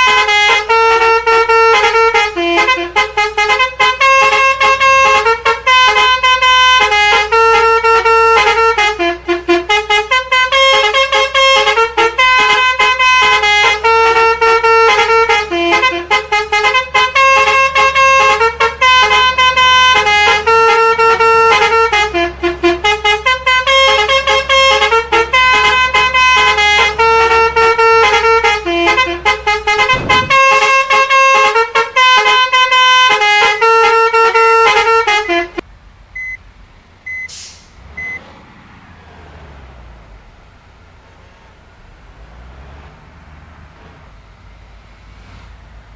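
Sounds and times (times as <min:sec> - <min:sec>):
musical air horn tune: 0:00.0 - 0:35.6
short thump: 0:29.8 - 0:31.0.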